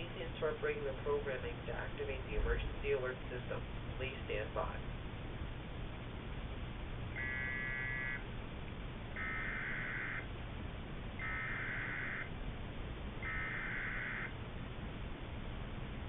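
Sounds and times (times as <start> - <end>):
broadcast hiss: 0.0 - 16.0
warbling digital data tones: 7.1 - 8.3, 9.1 - 10.3, 11.2 - 12.3, 13.2 - 14.4.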